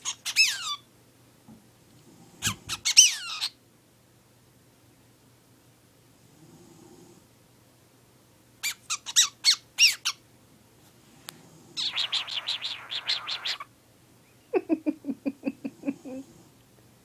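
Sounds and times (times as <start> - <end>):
cockatiel squawking: 0.0 - 0.8, 2.4 - 3.5, 8.6 - 10.2, 11.8 - 13.7
cockatiel raspy chattering: 11.8 - 13.7.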